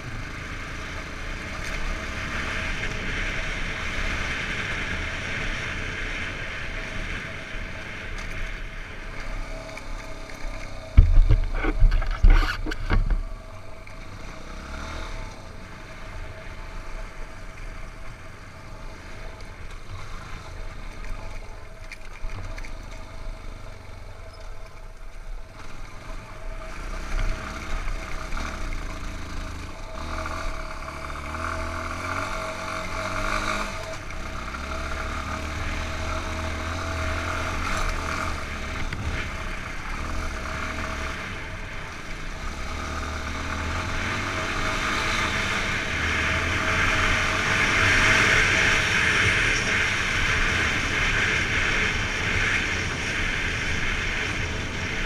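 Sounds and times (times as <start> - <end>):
motorcycle engine running: 0.0 - 55.0
wind rush on microphone: 10.8 - 13.4.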